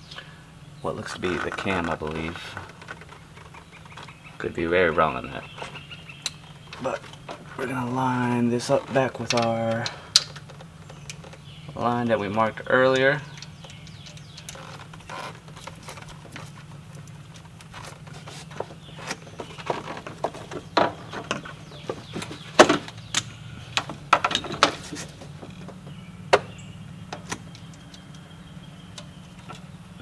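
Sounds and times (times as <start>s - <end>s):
steady low hum: 0.0s - 30.0s
metallic clicks and knocks: 12.9s - 26.5s.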